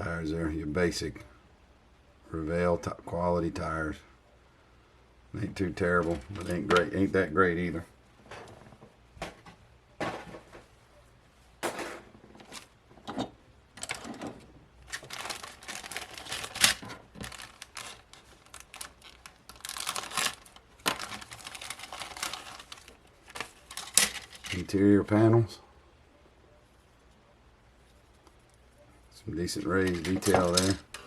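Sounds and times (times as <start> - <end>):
plastic bag rustling and crinkling: 13.8 - 24.8, 29.5 - 31.0.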